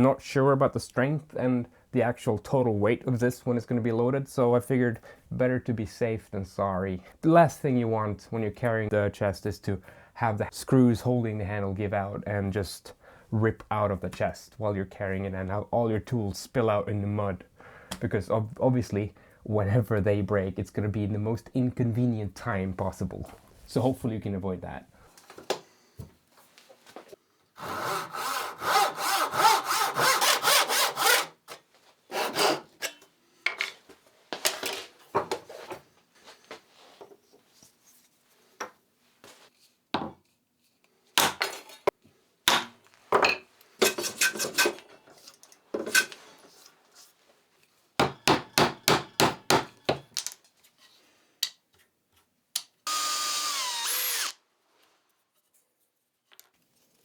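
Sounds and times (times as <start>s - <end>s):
hand saw cutting wood: 27.6s - 33.0s, 52.9s - 54.4s
small power tool running: 52.9s - 54.4s.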